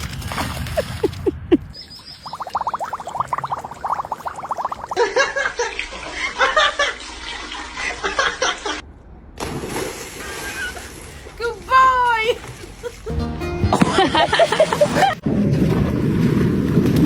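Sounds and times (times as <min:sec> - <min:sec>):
water splashing: 0:00.0 - 0:08.8, 0:09.4 - 0:13.2.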